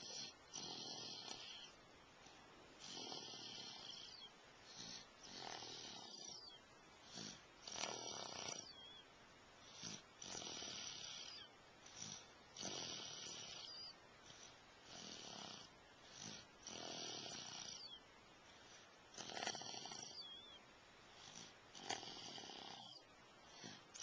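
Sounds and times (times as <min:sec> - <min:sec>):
rhythmic snoring: 0:00.0 - 0:09.0, 0:09.6 - 0:24.0.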